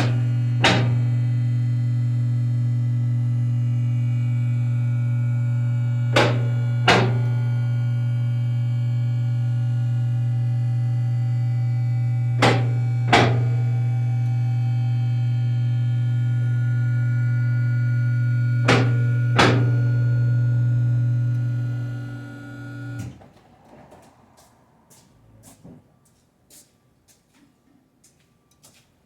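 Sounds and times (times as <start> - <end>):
sharp knocks: 0.0 - 1.1, 6.2 - 7.3, 12.4 - 13.6, 18.7 - 19.9.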